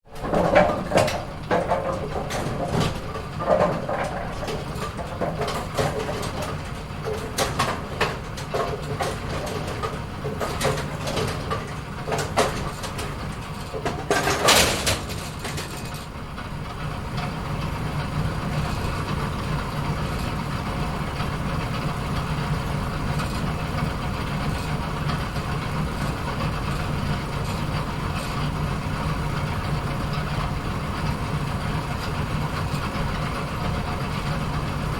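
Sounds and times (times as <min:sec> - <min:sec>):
steady machine hum: 0:00.0 - 0:34.9
pinsetter clattering pins: 0:00.2 - 0:16.0.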